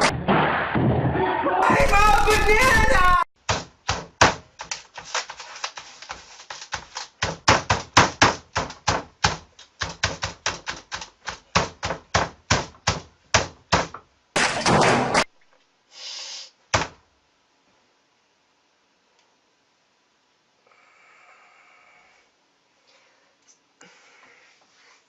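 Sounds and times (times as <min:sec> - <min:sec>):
face hitting computer keyboard: 0:06.6 - 0:14.0.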